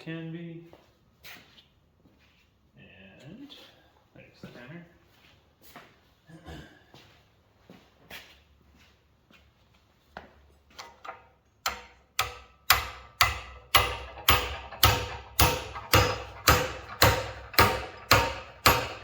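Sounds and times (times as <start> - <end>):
hammer blows on steel: 11.7 - 19.0.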